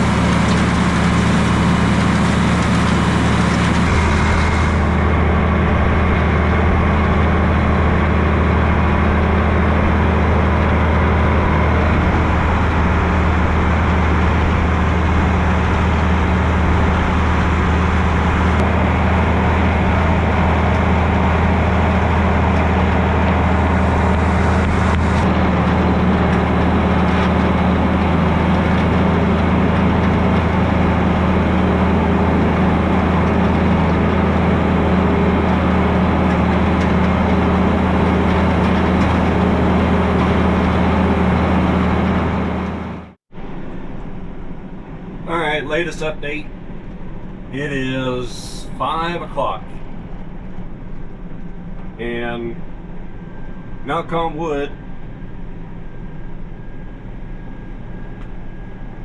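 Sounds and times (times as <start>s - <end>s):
vehicle engine running steadily: 0.0s - 59.0s.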